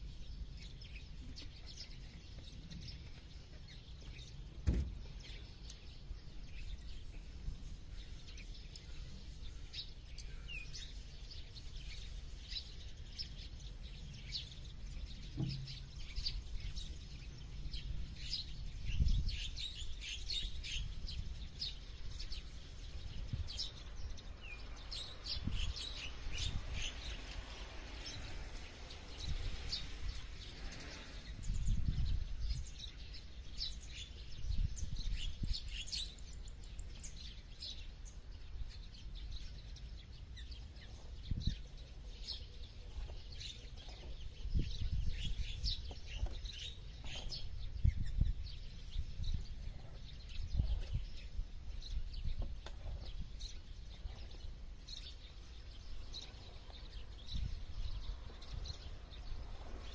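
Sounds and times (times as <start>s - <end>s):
small birds chirping: 0.0s - 59.9s.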